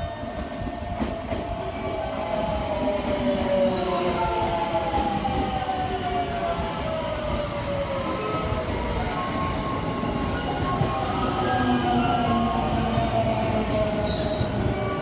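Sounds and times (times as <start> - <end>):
high brake squeal: 5.7 - 12.3, 14.0 - 15.0.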